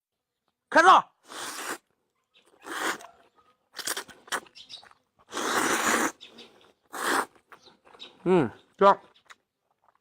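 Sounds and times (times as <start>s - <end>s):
crunching bites and chewing: 1.4s - 8.1s.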